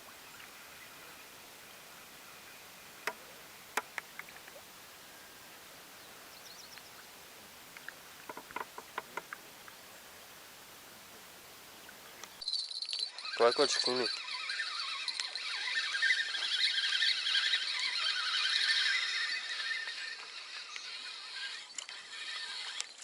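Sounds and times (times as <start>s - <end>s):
outdoor background hiss: 0.0s - 23.0s
sharp clicks: 3.0s - 4.6s, 7.7s - 9.4s
faint high chirp: 6.0s - 7.1s.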